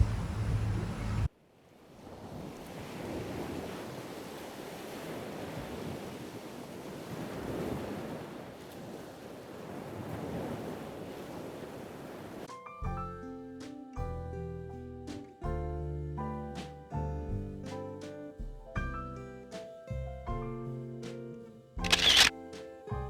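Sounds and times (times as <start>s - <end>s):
small waves washing on shore: 0.0s - 12.5s.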